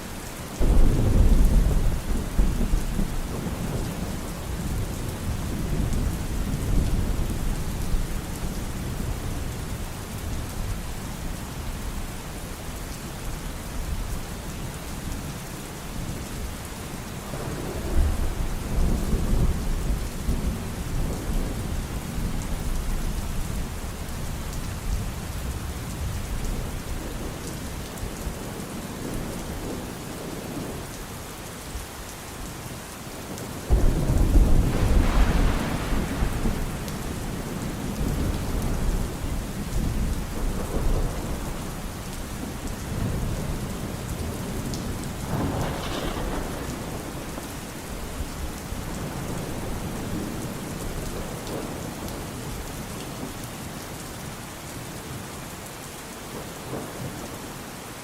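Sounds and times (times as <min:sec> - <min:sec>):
steady rain: 0:00.0 - 0:58.0
thunder clap and rumble: 0:00.6 - 0:10.9, 0:17.2 - 0:30.8, 0:33.3 - 0:53.2.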